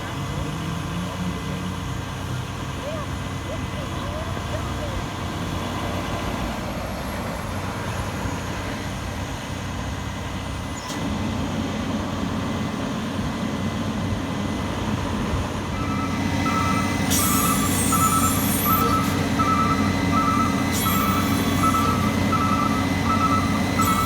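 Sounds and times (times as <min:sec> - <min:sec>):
diesel engine running: 0:00.0 - 0:24.0
warning beeper beeping: 0:15.7 - 0:24.0
air hissing: 0:15.8 - 0:24.0.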